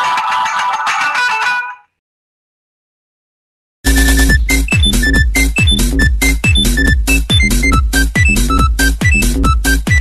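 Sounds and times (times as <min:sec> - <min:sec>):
electronic dance ringtone: 0:03.9 - 0:10.0.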